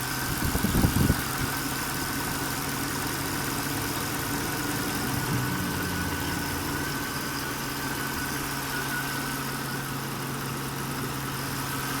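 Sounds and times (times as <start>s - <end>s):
car engine idling: 0.0s - 12.0s
thin steady whine: 3.5s - 11.5s.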